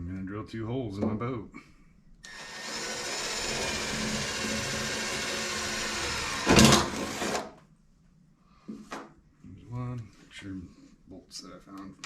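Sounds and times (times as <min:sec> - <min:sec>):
power drill boring through metal: 0:02.3 - 0:07.5.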